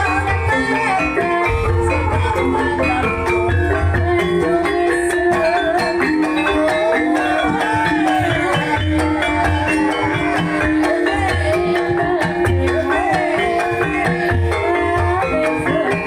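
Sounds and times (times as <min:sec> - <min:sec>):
gliding melody line: 0:00.0 - 0:16.0
low drum beat: 0:01.5 - 0:04.9.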